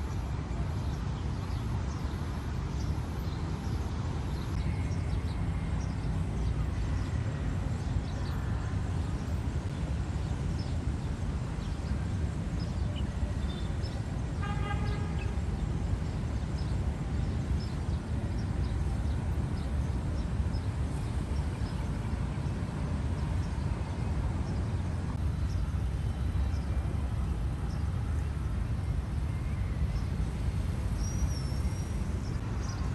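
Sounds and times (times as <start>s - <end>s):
traffic rumble: 0.0s - 32.9s
vehicle horn: 14.4s - 15.4s.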